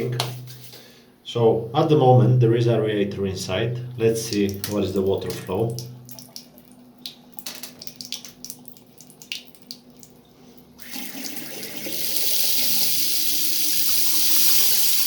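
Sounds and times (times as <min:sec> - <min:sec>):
tap water running: 0:04.0 - 0:10.2, 0:10.8 - 0:15.0.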